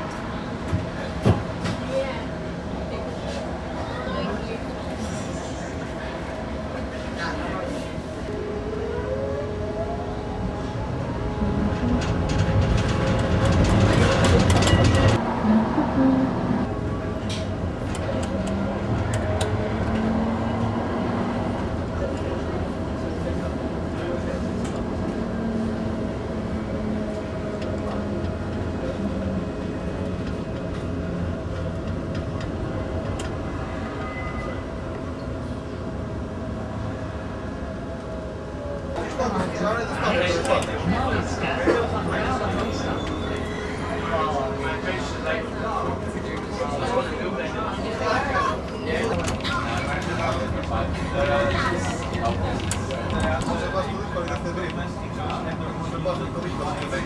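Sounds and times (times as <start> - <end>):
train interior rumble: 0.0 - 57.0
wheels clicking on track: 10.9 - 15.2, 45.0 - 57.0.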